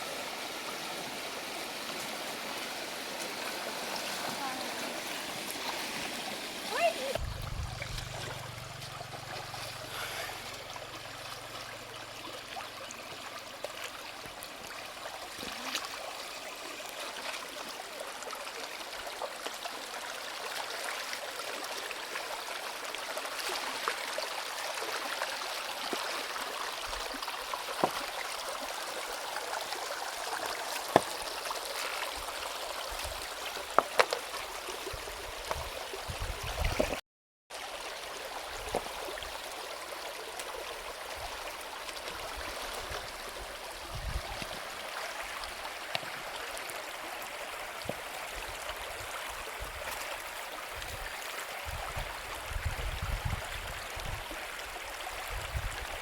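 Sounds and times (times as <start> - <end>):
stream water running over stones: 0.0 - 56.0.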